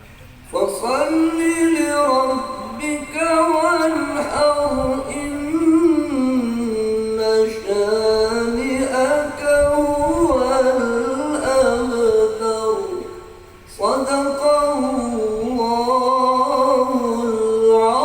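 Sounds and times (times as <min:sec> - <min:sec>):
man chanting melodic recitation: 0:00.4 - 0:18.0.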